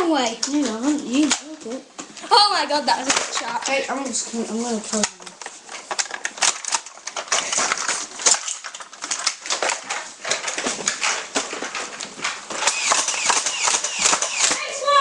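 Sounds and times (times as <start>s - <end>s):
toy blasters clicking and firing: 6.0s - 11.2s, 12.5s - 15.0s.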